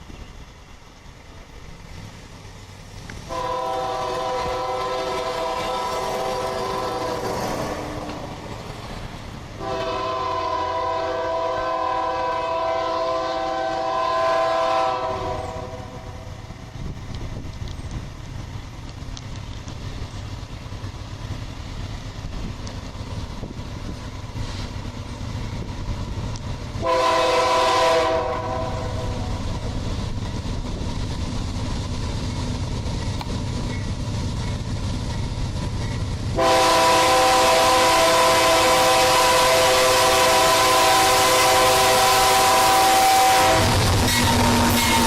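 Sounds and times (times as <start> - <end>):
diesel locomotive rumble: 0.0 - 45.0
locomotive air horn blasts: 3.3 - 7.4, 9.6 - 16.3, 26.8 - 29.4, 36.4 - 45.0.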